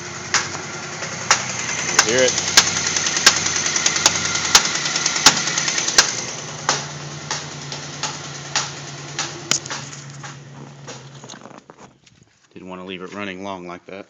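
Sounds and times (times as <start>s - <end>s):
valvetrain ticking and knocking: 0.0s - 11.3s
engine running: 0.0s - 12.1s.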